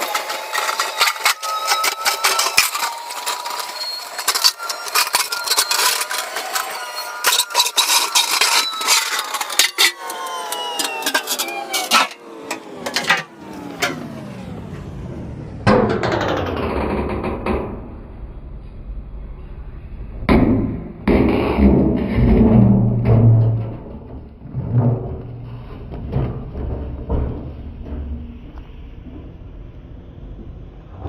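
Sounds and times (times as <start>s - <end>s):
excavator engine and hydraulic whine: 0.0s - 20.3s, 22.2s - 31.0s
sharp knocks and clanks: 15.6s - 18.1s, 20.3s - 29.4s.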